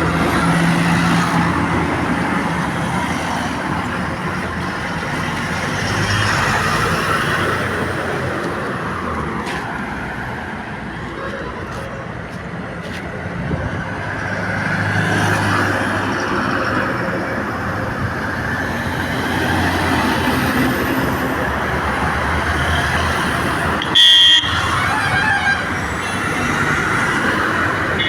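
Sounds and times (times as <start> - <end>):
road traffic engines: 0.0 - 28.0
loud horn blast: 23.8 - 26.2.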